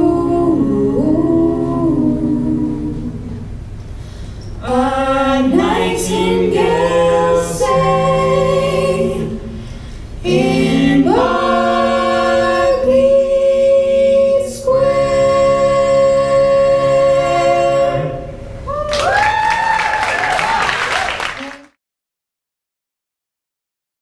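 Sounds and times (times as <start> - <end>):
a cappella close-harmony singing: 0.0 - 3.6, 4.6 - 9.6, 10.2 - 18.5
applause: 18.9 - 21.8.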